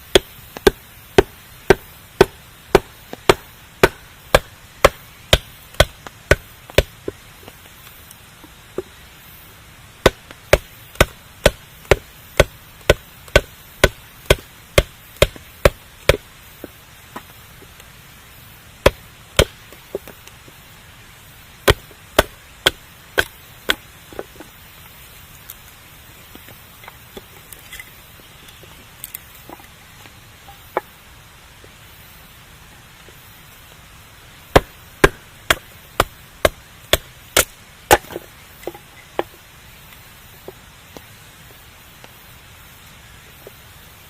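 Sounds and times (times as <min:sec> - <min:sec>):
wood being chopped: 0:00.1 - 0:07.8, 0:10.0 - 0:17.3, 0:18.8 - 0:20.2, 0:21.6 - 0:24.3, 0:34.5 - 0:39.4.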